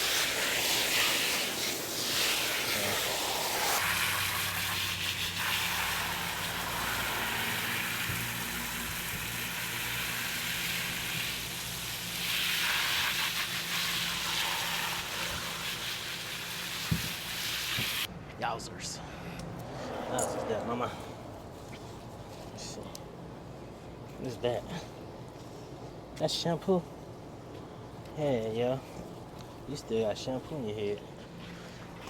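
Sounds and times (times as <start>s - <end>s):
water spraying onto dog's coat: 0.0s - 18.1s.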